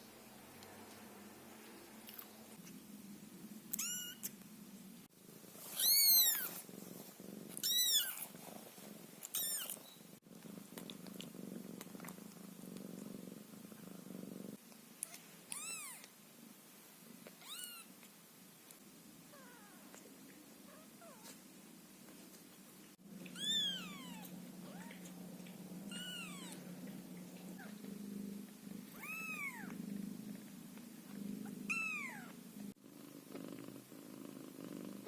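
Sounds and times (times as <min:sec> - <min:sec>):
low purr: 0:06.2 - 0:14.6, 0:23.0 - 0:35.0.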